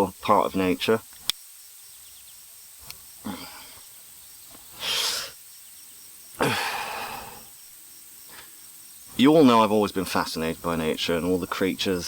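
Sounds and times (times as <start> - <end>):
person breathing noises: 3.2 - 4.0, 4.7 - 5.4, 6.4 - 7.6.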